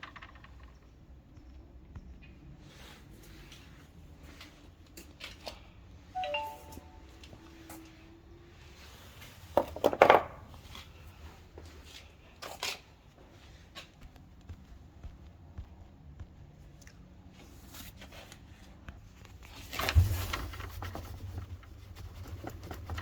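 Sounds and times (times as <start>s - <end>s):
short electronic beep: 6.2s - 7.3s.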